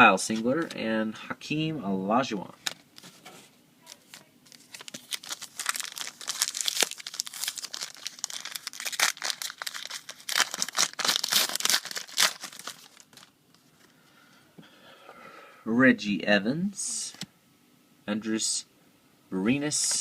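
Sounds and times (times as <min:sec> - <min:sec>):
wrapper crinkling and tearing: 0:03.8 - 0:13.4.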